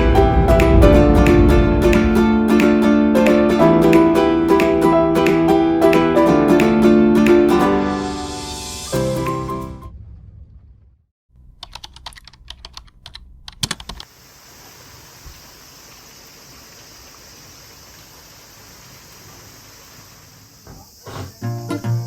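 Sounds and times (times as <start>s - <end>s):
music: 0.0s - 10.0s, 21.4s - 22.0s
rapid sharp clicks: 11.6s - 14.1s
crickets chirping: 14.1s - 22.0s.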